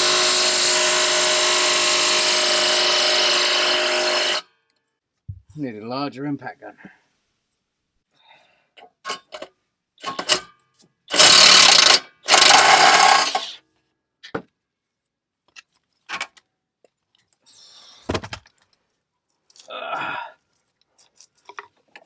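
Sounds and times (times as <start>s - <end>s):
clicks and knocks of tool on metal: 8.8s - 10.5s
impact wrench hammering: 10.0s - 10.4s, 11.1s - 13.6s.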